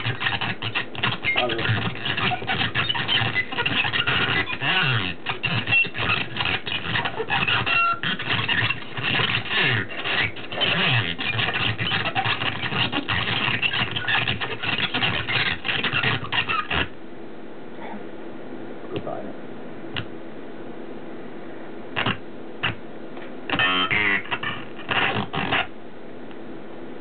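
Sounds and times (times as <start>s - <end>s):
glitched synthetic speech: 1.3s - 2.3s, 10.5s - 11.0s.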